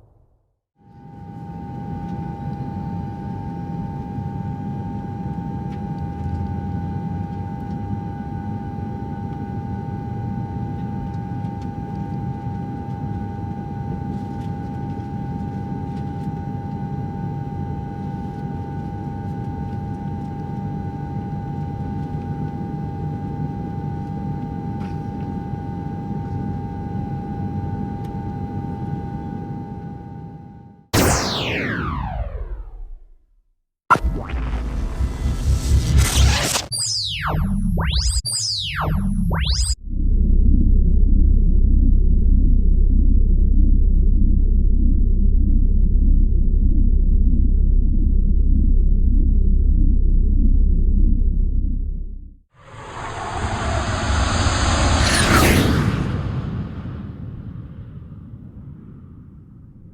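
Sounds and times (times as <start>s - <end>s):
aircraft engine whine and rumble: 0.8s - 33.0s, 52.6s - 59.9s.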